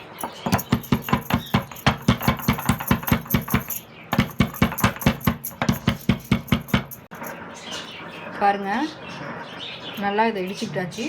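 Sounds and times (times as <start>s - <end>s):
pestle pounding in a mortar: 0.2s - 7.1s.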